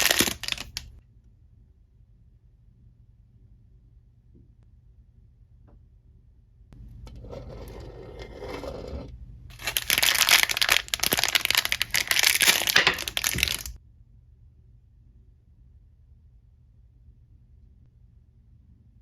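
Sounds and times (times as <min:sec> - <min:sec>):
packaging crinkling and tearing: 0:00.0 - 0:00.9, 0:09.5 - 0:13.8
packaging rustling: 0:00.0 - 0:00.9, 0:09.5 - 0:13.8.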